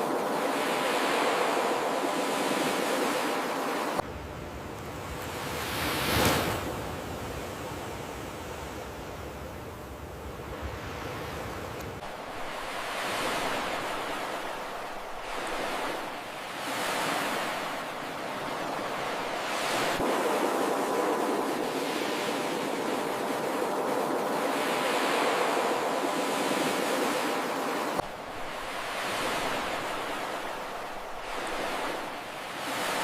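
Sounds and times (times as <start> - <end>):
waves breaking on shore: 0.0 - 9.4, 10.2 - 33.0.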